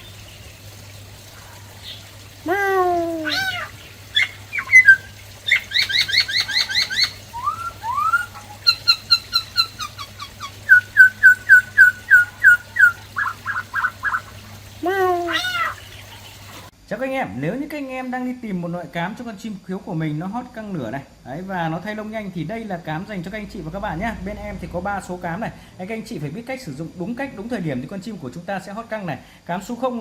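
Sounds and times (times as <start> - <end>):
faint steady hum: 0.0 - 30.0
bird singing whistled song: 4.2 - 14.3.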